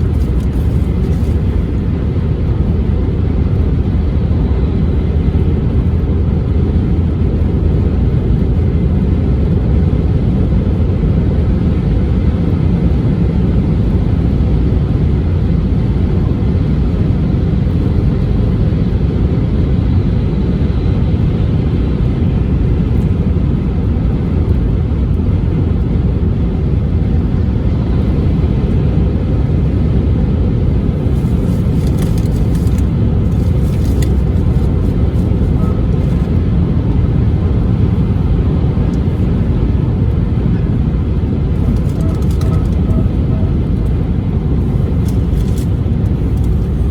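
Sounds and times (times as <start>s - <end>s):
car engine and tyre rumble: 0.0s - 46.9s.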